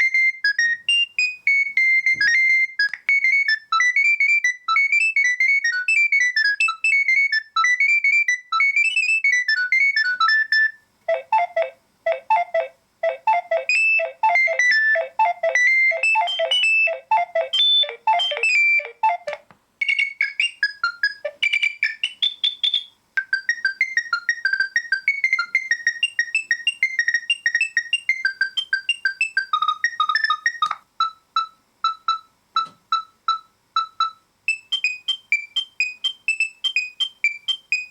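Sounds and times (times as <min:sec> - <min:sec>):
electronic phone ringtone melodies: 0:01.5 - 0:22.3, 0:23.2 - 0:32.2.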